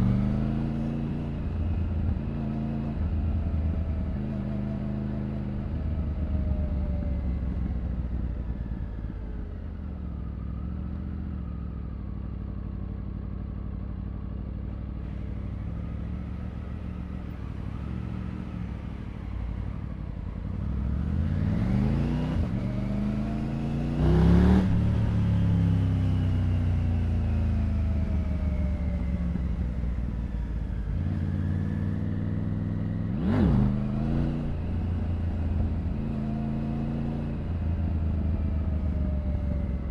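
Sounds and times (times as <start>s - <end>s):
motorcycle engine revving: 20.2s - 26.9s, 30.8s - 39.8s.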